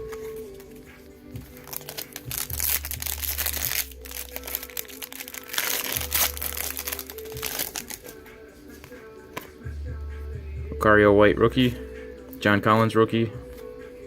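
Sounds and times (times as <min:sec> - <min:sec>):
background music: 0:00.0 - 0:14.0
foil wrapper crinkling and tearing: 0:01.6 - 0:08.1.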